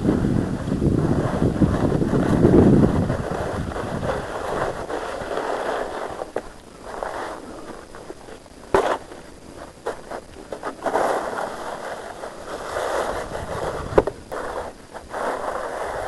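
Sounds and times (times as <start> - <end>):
shovel scraping snow: 0.8 - 16.0.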